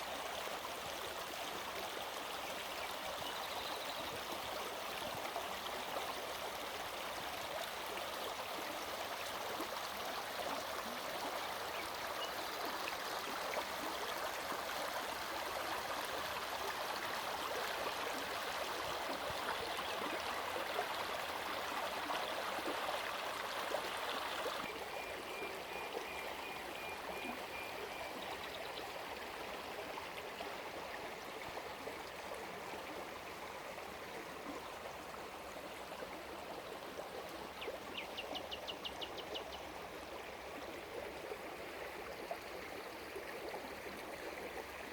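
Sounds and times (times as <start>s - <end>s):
stream water burbling: 0.0s - 44.9s.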